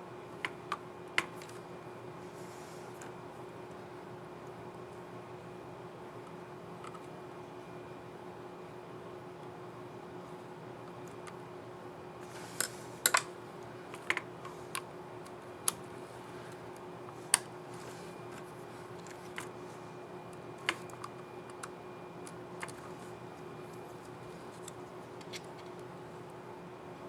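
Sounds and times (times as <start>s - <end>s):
faint steady hum: 0.0s - 27.0s.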